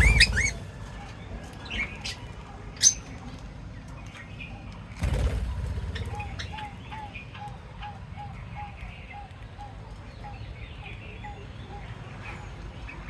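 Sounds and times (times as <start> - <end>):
wing flapping: 0.0 - 0.8, 5.0 - 6.8
pet birds chirping: 0.0 - 5.0, 5.9 - 13.0.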